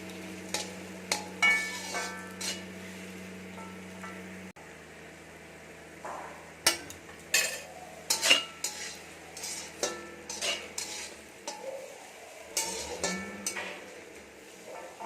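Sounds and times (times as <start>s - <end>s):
spatula scraping chicken in pan: 0.5s - 3.0s, 7.4s - 15.0s.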